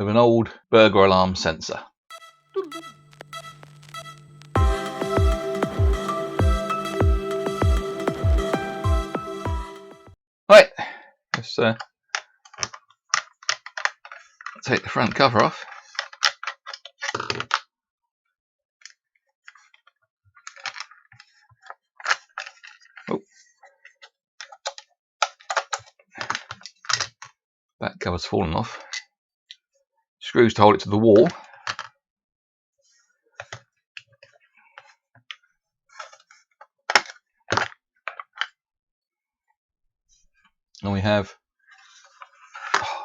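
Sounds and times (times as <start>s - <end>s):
plastic parts clicking: 11.8s - 14.6s, 15.7s - 17.7s, 18.8s - 23.1s, 23.9s - 27.4s, 31.5s - 31.9s, 33.4s - 34.4s, 36.0s - 38.6s.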